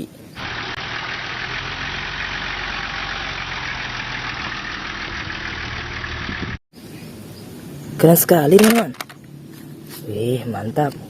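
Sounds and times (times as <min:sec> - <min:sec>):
vehicle engine idling: 0:00.4 - 0:06.6.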